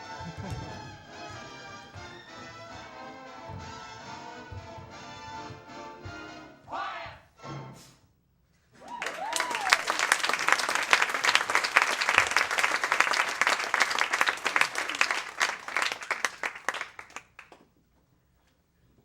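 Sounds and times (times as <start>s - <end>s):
audience applauding: 8.8s - 17.6s.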